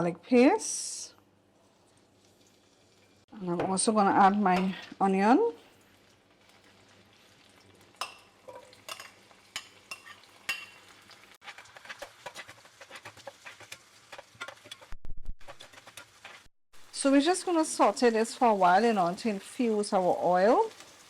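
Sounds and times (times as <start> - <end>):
light sizzle: 0.3 - 21.0
utensil clicking and scraping pan: 8.0 - 10.8, 11.4 - 16.5.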